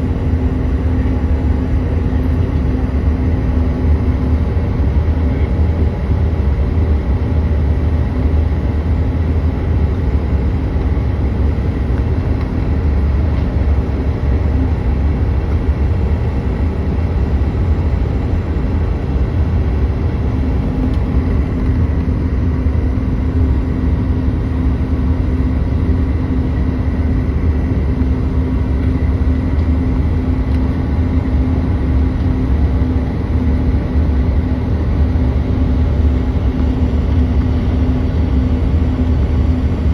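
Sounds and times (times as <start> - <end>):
jet engine rumble: 0.0 - 39.9
steady hum: 0.0 - 39.9.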